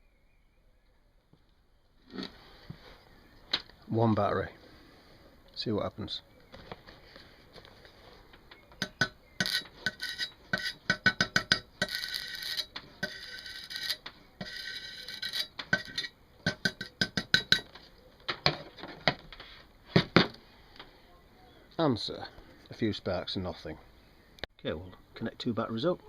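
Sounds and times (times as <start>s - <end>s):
welding sparks crackling: 8.9s - 17.0s.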